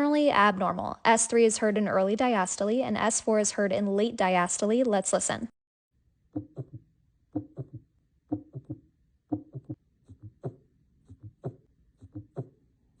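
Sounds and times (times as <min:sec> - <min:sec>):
heartbeat gallop thumps: 0:06.4 - 0:12.6.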